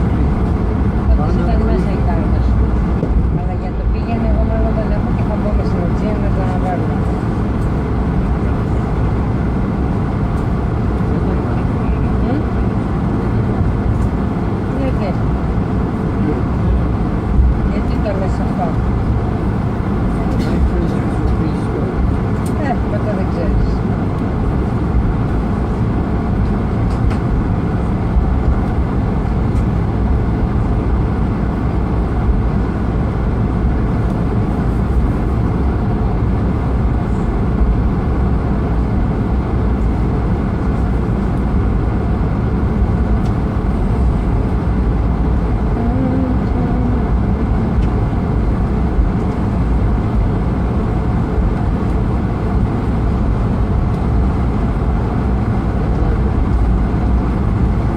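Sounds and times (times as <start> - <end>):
jet engine rumble in cabin: 0.0 - 57.9
airflow rushing: 29.8 - 53.6.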